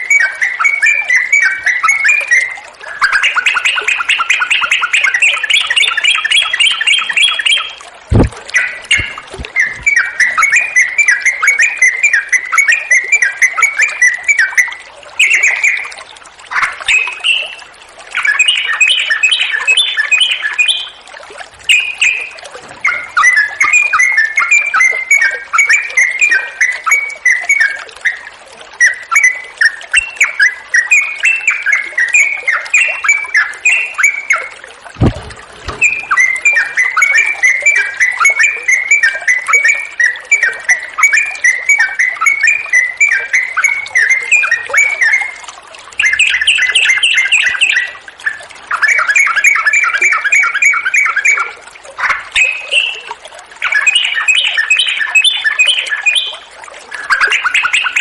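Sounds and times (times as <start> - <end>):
flowing water: 0.0 - 58.0
bird singing chattering phrases: 3.0 - 12.5.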